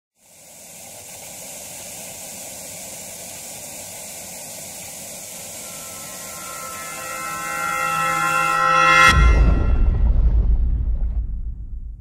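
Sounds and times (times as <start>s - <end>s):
steady white noise hiss: 0.2s - 9.0s
musical tones: 5.5s - 10.1s.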